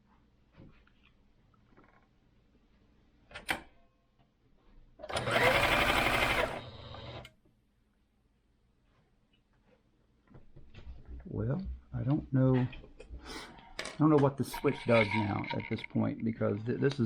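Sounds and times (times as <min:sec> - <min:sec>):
sewing machine motor running: 0:05.1 - 0:07.2.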